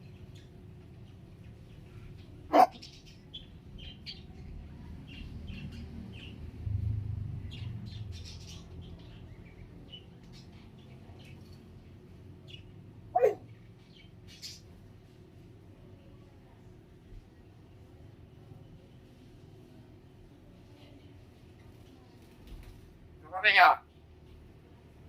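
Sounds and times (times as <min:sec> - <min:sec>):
parrots chirping and chattering: 0:00.0 - 0:06.5, 0:07.4 - 0:11.8, 0:12.4 - 0:14.8, 0:23.2 - 0:23.8.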